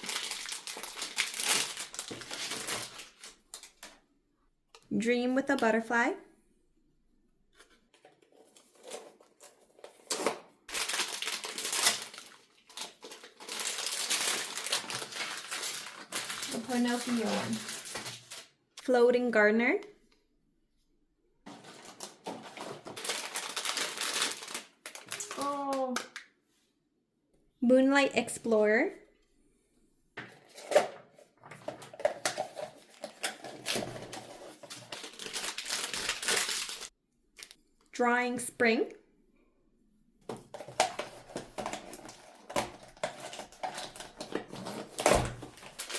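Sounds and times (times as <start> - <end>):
packaging crinkling: 0.0 - 4.0, 8.3 - 18.5, 21.5 - 25.8, 31.6 - 37.5, 40.4 - 45.9.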